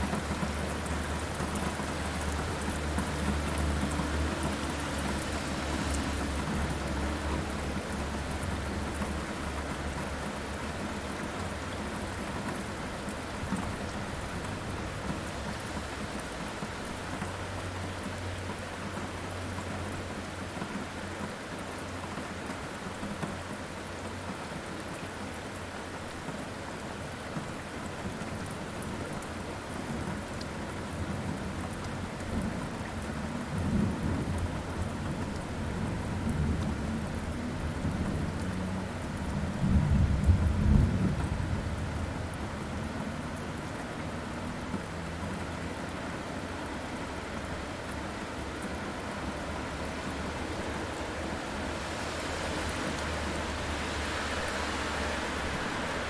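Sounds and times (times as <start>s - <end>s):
heavy rain: 0.0s - 56.0s
rolling thunder: 39.5s - 42.4s.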